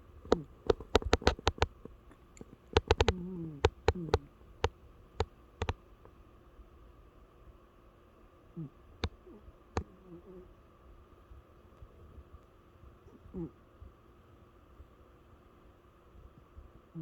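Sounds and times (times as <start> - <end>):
sharp clicks: 0.2 - 6.2.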